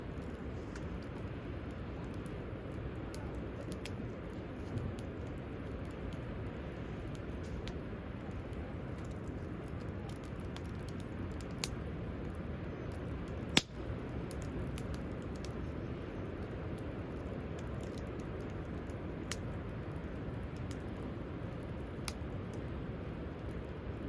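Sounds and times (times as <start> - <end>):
campfire crackling and popping: 0.0 - 24.0.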